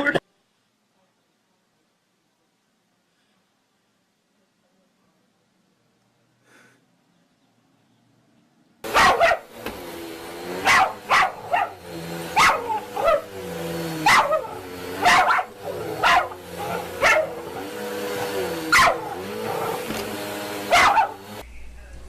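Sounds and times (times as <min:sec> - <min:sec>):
dog barking: 0:08.8 - 0:09.6, 0:10.6 - 0:13.4, 0:14.0 - 0:20.0, 0:20.6 - 0:21.4
droning hum: 0:21.4 - 0:22.0.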